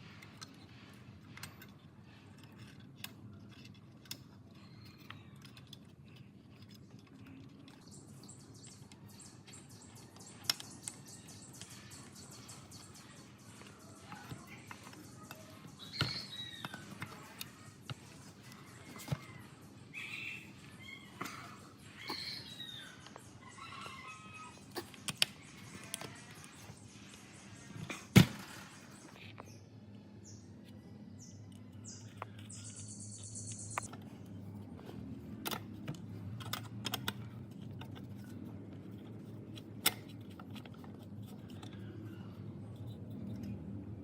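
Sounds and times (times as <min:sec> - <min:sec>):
clicks and knocks of parts: 0:00.2 - 0:19.8, 0:24.6 - 0:27.2, 0:33.8 - 0:43.7
birds chirping: 0:07.1 - 0:33.9.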